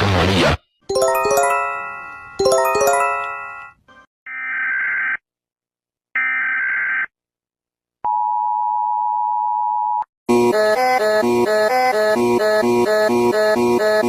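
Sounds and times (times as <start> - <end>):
electronic music: 0.9 - 3.5
two-note attention tone: 0.9 - 3.7.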